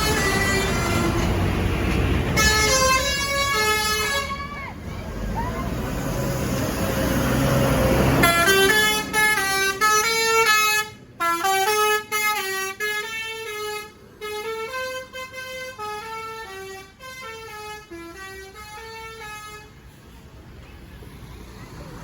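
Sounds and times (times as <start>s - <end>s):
musical bus horn melody: 0.0s - 1.5s, 2.2s - 4.5s, 8.1s - 19.8s.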